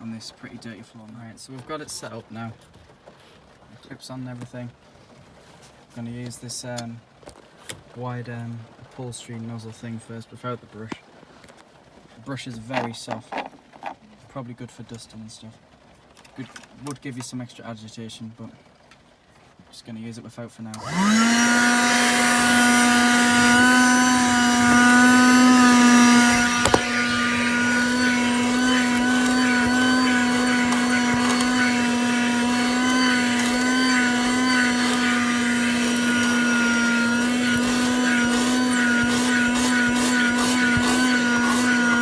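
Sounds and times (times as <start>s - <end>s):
car vacuum cleaner motor humming: 20.8s - 42.0s.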